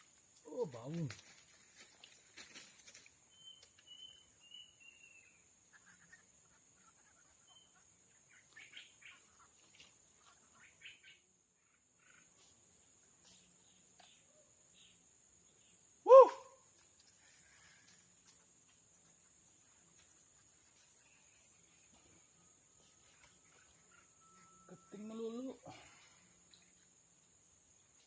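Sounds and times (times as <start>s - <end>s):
bird chirping: 3.2s - 12.5s, 13.2s - 28.0s
faint ticks: 16.7s - 19.2s
high-pitched insect drone: 20.8s - 26.9s.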